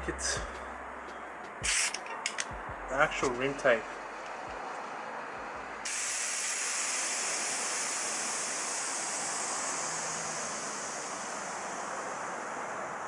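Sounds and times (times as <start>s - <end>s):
air hissing out of a tyre: 3.1s - 13.0s.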